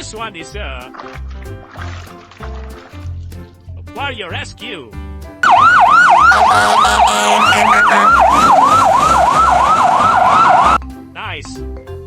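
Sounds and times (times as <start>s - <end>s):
yelping emergency siren: 5.4s - 10.8s.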